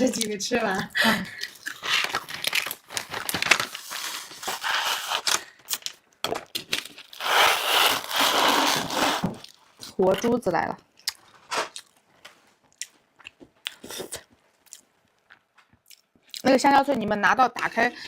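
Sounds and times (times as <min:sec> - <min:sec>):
plastic packaging crinkling: 0:01.6 - 0:06.0, 0:06.6 - 0:09.6.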